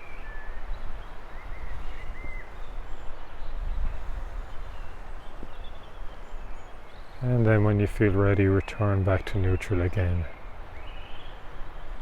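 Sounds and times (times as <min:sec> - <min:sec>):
small birds chirping: 0:00.0 - 0:12.0
wind rumble on microphone: 0:00.0 - 0:12.0.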